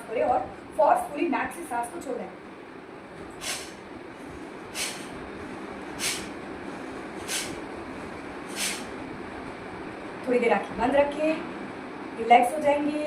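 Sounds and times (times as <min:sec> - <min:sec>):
sharp hissing nasal exhalations: 0:03.4 - 0:03.8, 0:04.7 - 0:05.2, 0:06.0 - 0:06.4, 0:07.2 - 0:07.6, 0:08.5 - 0:09.0.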